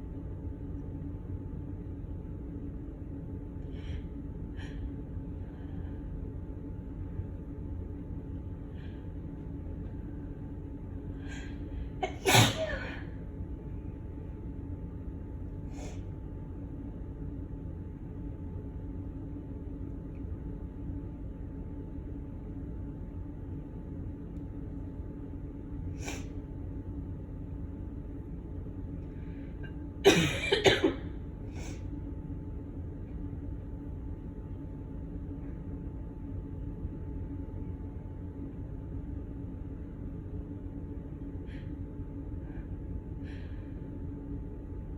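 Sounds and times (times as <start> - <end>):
woman sneezing: 12.0 - 13.2, 30.0 - 31.0.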